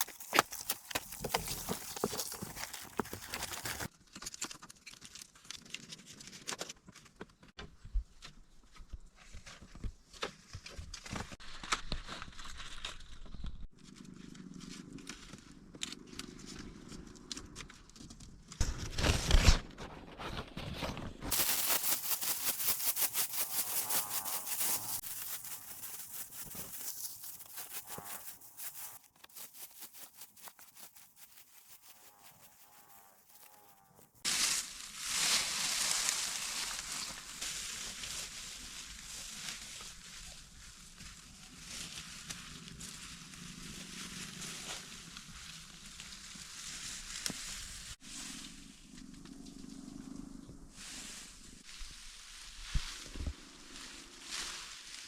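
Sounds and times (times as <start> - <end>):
bamboo snapping and tearing: 0.0 - 6.7, 15.0 - 19.9
fast repeated scraping: 21.3 - 34.3.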